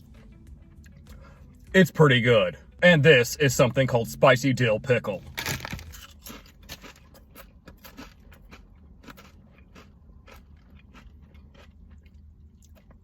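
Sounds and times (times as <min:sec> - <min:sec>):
crunching chips in mouth: 0:05.3 - 0:13.0.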